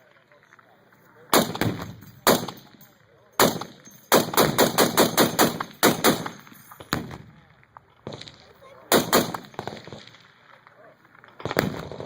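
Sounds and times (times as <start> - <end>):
machine gun shots: 1.3 - 2.7, 3.4 - 7.1, 8.9 - 10.0.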